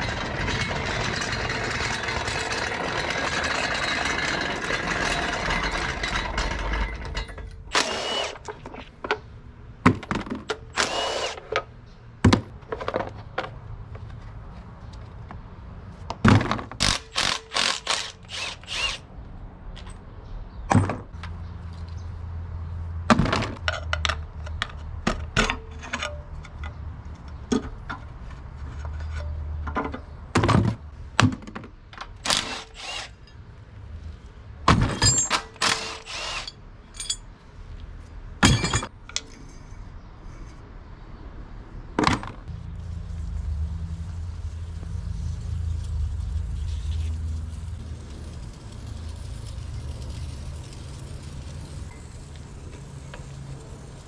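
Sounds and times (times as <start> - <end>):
tools and engine parts clanking: 0.0 - 15.5, 19.7 - 22.1, 23.1 - 37.8, 38.4 - 41.0.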